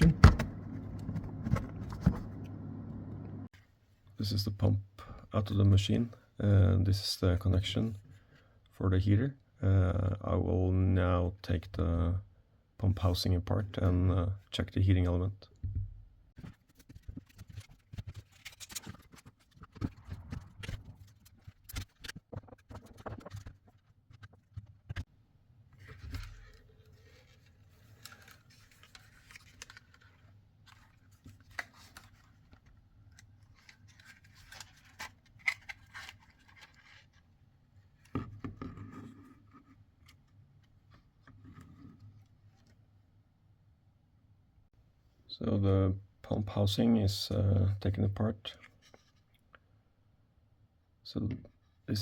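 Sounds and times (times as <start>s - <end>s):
scraping and rustling: 16.4s - 25.1s, 25.7s - 37.3s.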